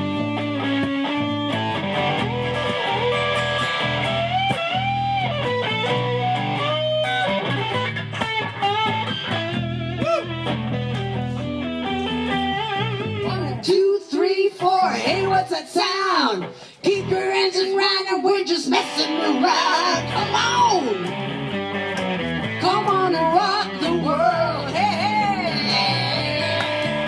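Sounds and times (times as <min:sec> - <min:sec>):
low bass notes: 0:00.0 - 0:13.7, 0:19.8 - 0:27.0
overdriven electric guitar lead: 0:00.0 - 0:27.0.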